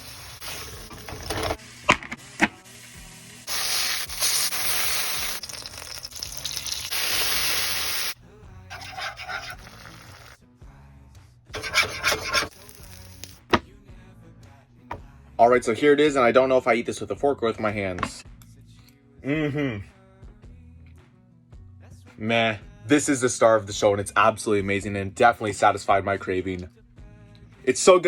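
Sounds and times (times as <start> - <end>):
light background music: 0.2 - 6.9, 8.2 - 28.0
rubbing and scraping: 8.7 - 10.4, 11.6 - 12.6.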